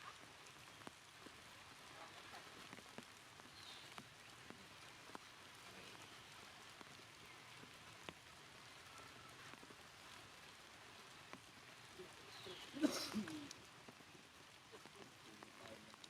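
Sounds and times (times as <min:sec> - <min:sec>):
light rain: 0:00.0 - 0:16.0.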